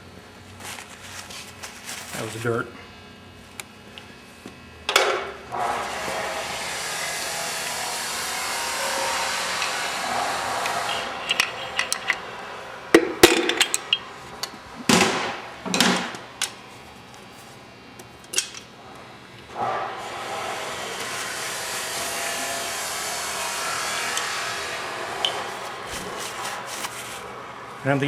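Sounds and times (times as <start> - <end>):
metal scraping: 5.5 - 14.1
metal tools clinking: 7.2 - 12.4, 13.0 - 14.0.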